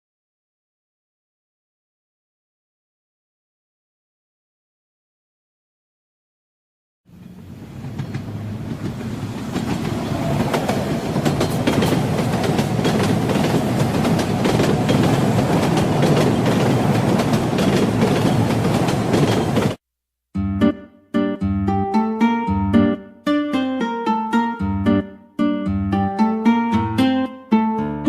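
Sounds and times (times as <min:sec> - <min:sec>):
train wheels clacking on rails: 0:07.2 - 0:19.8.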